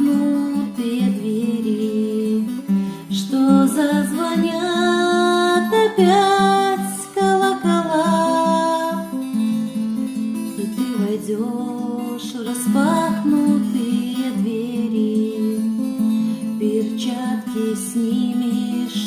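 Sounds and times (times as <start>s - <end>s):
acoustic guitar playing: 0.0s - 19.0s.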